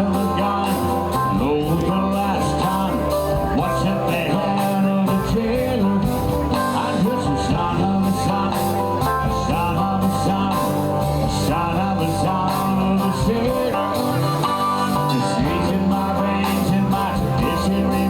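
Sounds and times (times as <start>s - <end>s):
bass line: 0.0s - 18.0s
drums: 0.0s - 18.0s
electric guitar bending notes: 0.0s - 18.0s.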